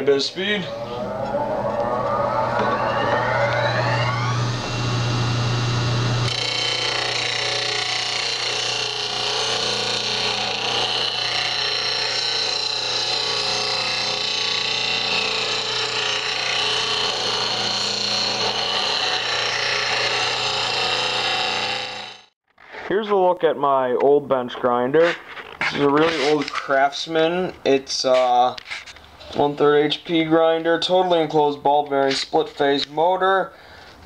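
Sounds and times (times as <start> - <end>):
bench grinder running: 0.6 - 22.3.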